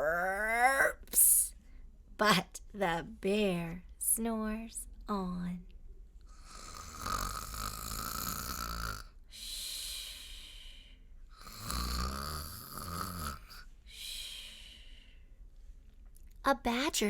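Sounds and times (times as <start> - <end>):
woman imitating bear snoring: 6.4 - 9.1, 11.4 - 13.6
long airy breath: 9.3 - 11.1, 13.9 - 15.4.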